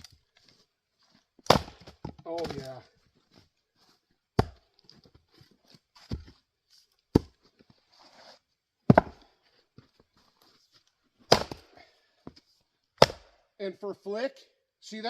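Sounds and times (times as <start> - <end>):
axe chopping firewood: 1.4 - 2.8, 4.3 - 5.1, 7.1 - 7.4, 8.9 - 9.3, 11.3 - 11.8, 13.0 - 13.4.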